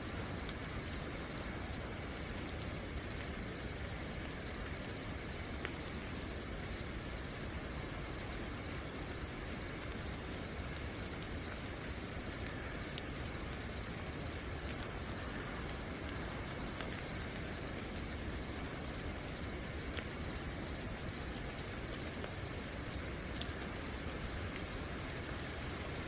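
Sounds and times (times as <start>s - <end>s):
crickets chirping: 0.0s - 26.0s
steady rain: 0.0s - 26.0s.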